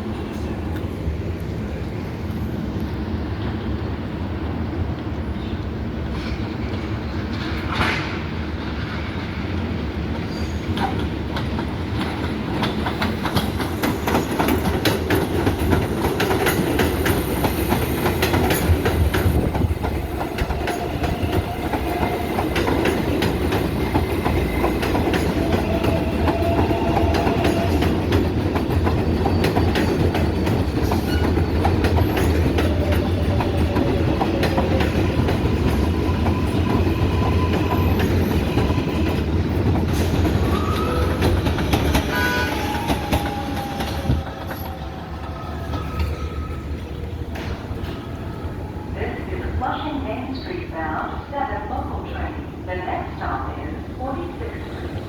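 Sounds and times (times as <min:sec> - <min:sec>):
subway train rumble: 0:00.0 - 0:55.0
wheels clicking over rail joints: 0:10.7 - 0:44.8.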